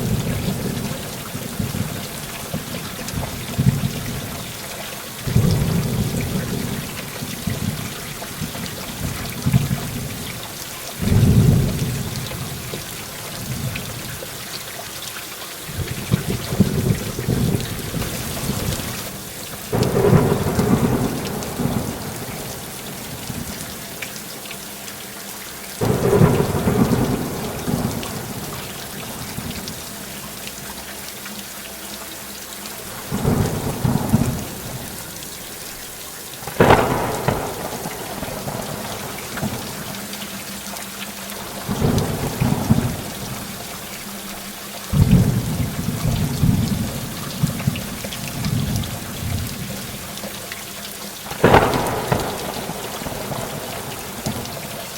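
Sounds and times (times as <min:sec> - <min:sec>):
heavy rain falling: 0:00.0 - 0:54.9
thunder rolling: 0:15.7 - 0:23.6, 0:25.8 - 0:29.4, 0:33.0 - 0:34.9, 0:36.4 - 0:39.9, 0:44.9 - 0:49.6, 0:51.3 - 0:54.6.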